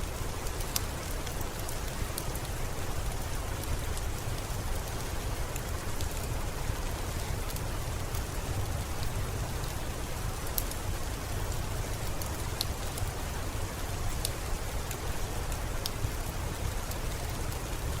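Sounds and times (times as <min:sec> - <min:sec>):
steady rain: 0:00.0 - 0:18.0
wood fire crackling: 0:07.1 - 0:18.0.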